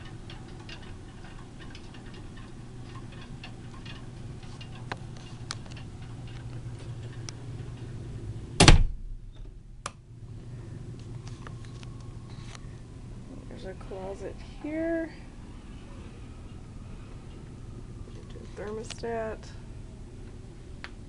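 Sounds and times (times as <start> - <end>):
cabin fittings ticking and creaking: 0.0 - 8.0
steady low hum: 0.0 - 21.0
loud thump: 8.6 - 9.1.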